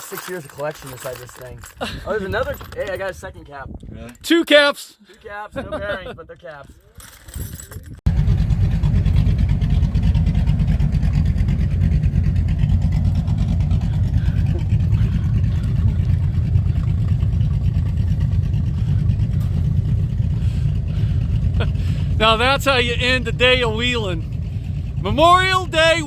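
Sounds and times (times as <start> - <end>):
truck engine rumbling: 7.8 - 26.0.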